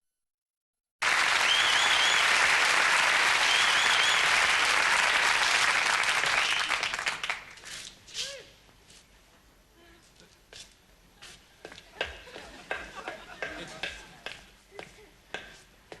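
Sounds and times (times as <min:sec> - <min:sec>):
audience applause: 0:01.0 - 0:07.6
warbling whistles from crowd: 0:01.4 - 0:02.4, 0:03.3 - 0:04.5.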